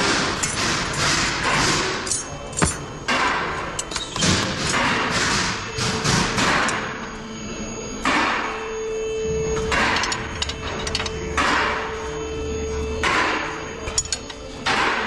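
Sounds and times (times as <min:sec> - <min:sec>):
hammer striking steel: 0:00.0 - 0:07.1, 0:08.0 - 0:08.8, 0:09.6 - 0:12.2, 0:13.0 - 0:15.0.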